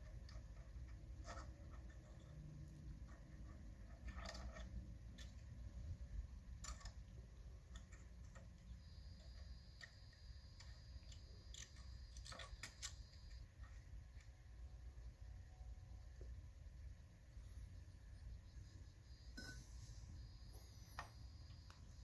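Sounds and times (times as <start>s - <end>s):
thin steady high tone: 15.0s - 22.0s.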